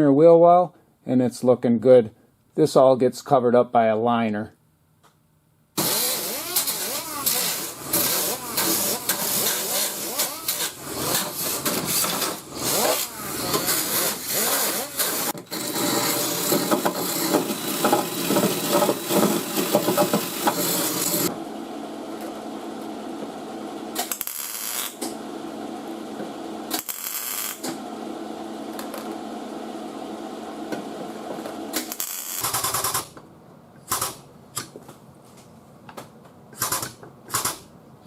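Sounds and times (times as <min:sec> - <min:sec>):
power tool running: 0:05.8 - 0:21.5.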